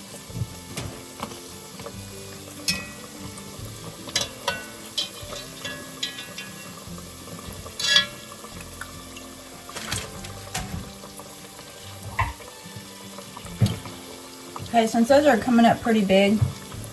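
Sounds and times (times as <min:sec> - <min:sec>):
food deep-frying in hot oil: 0:00.0 - 0:16.9
sharp clinks in pan: 0:02.7 - 0:03.2, 0:04.2 - 0:06.7.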